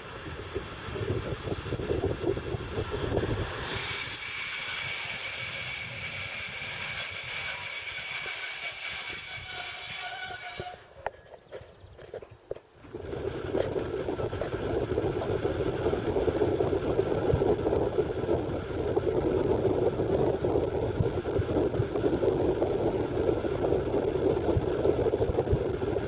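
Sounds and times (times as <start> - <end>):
high-pitched wheel squeal: 0.0 - 1.6, 3.3 - 11.3
train rumble and clatter: 0.0 - 26.0.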